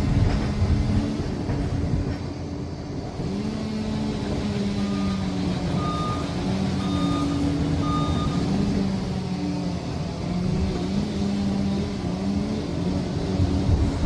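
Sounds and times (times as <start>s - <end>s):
diesel engine running under load: 0.0s - 14.0s
reversing alarm beeping: 4.8s - 8.7s.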